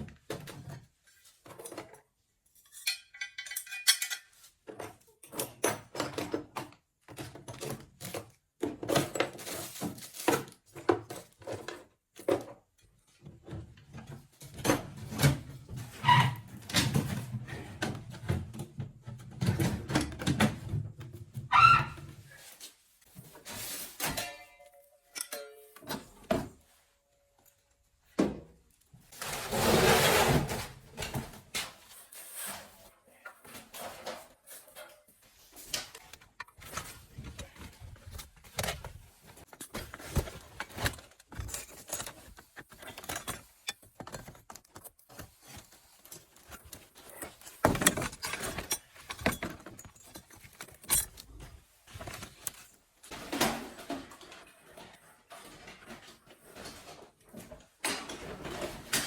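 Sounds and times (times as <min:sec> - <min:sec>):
objects being handled clattering: 0:00.0 - 0:59.0
rustling and scraping: 0:07.7 - 0:24.5, 0:29.0 - 0:59.0.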